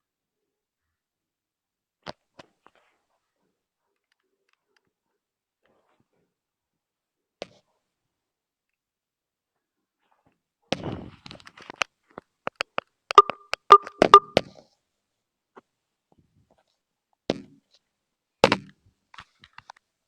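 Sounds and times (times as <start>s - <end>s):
sharp taps and clicks: 12.6s - 14.4s
brief ring: 13.2s - 14.4s.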